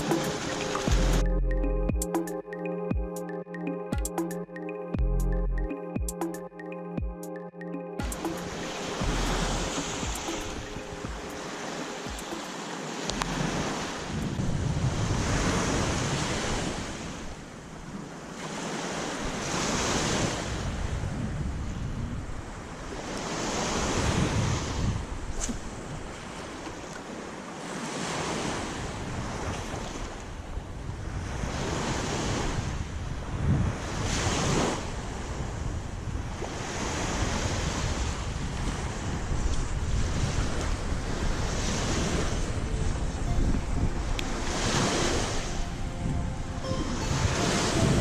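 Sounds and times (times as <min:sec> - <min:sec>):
waves washing on beach: 0:00.0 - 0:00.9, 0:08.0 - 0:45.7
wind buffeting microphone: 0:13.1 - 0:17.2, 0:20.4 - 0:23.1, 0:30.4 - 0:46.6.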